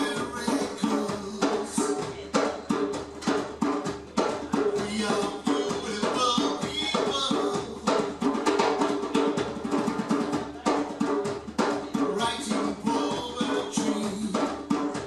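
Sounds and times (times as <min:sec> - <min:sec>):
percussion drums playing: 0:00.0 - 0:15.0.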